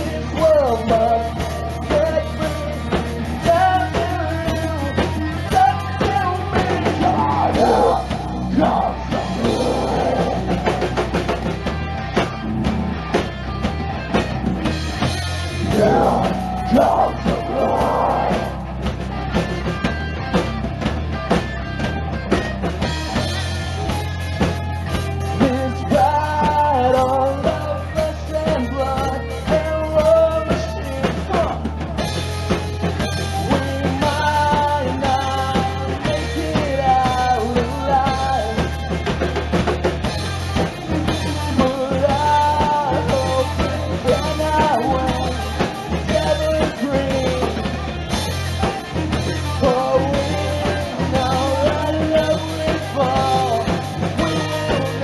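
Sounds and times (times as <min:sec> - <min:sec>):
lead singer singing: 0:00.0 - 0:11.1, 0:15.5 - 0:19.0, 0:25.0 - 0:32.2, 0:33.1 - 0:39.2, 0:40.3 - 0:55.0
hard rock band playing: 0:00.0 - 0:55.0.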